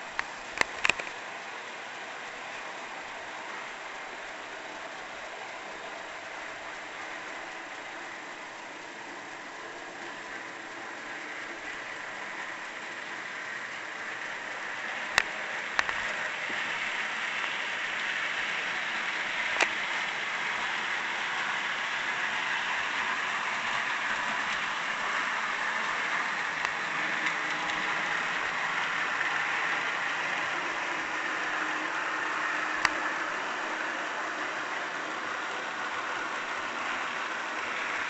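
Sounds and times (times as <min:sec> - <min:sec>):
model train running on track: 0:00.0 - 0:38.0.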